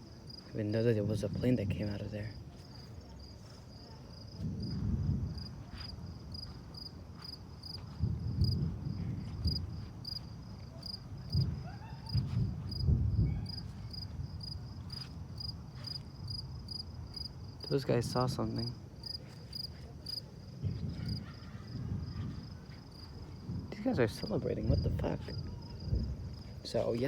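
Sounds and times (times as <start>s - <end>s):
crickets chirping: 0.0s - 27.0s
distant thunder rumbling: 4.3s - 18.9s, 20.5s - 26.7s.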